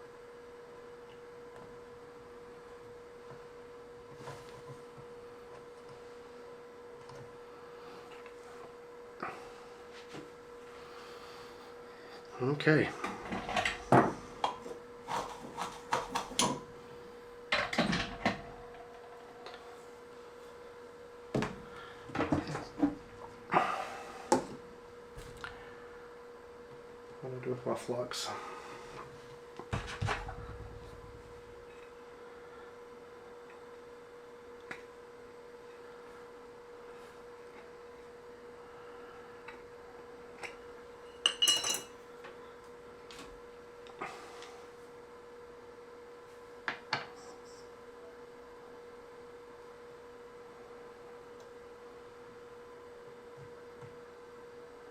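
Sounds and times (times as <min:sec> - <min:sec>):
faint steady hum: 0:00.0 - 0:54.9
metal tools clinking: 0:41.3 - 0:41.9.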